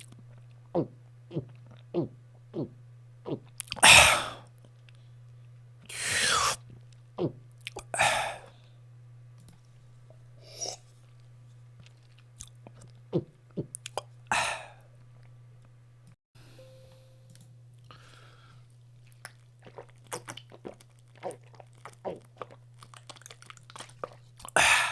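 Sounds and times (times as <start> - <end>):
low steady hum: 0.0 - 24.9
person gulping and swallowing: 19.1 - 24.9.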